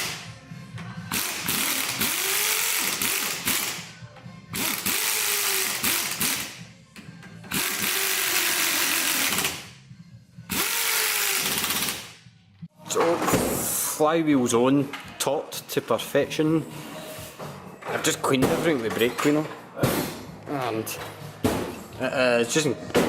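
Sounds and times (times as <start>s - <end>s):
power tool motor spinning: 10.5s - 12.0s.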